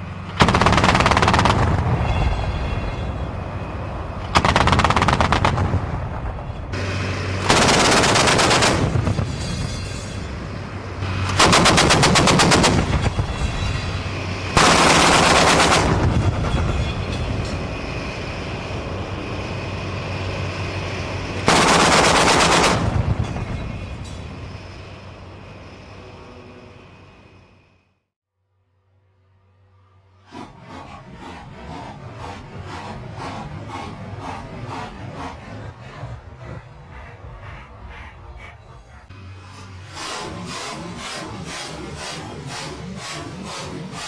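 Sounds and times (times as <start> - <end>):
autocannon bursts: 0.3 - 2.1, 4.3 - 6.0, 7.3 - 9.1, 11.0 - 13.1, 21.5 - 23.1
low engine hum: 29.2 - 43.4.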